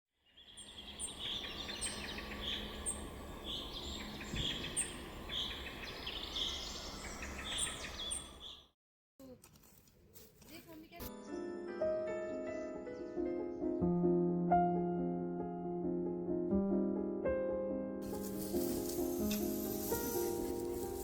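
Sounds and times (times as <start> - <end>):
birds chirping and trilling: 0.2 - 8.7.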